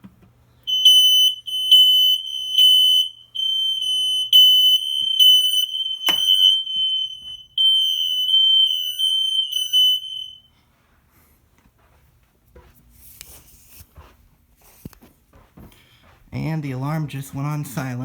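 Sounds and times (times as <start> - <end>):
shrill alarm buzzer: 0.7 - 10.5.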